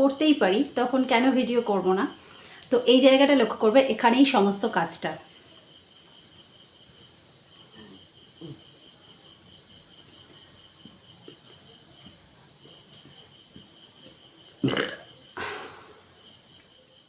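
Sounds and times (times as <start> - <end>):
crickets chirping: 0.0 - 17.0
woman burping: 14.6 - 16.0.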